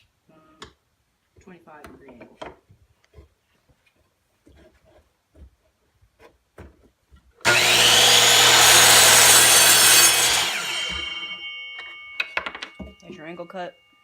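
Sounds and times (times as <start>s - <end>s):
miter saw cutting wood: 7.4s - 11.4s.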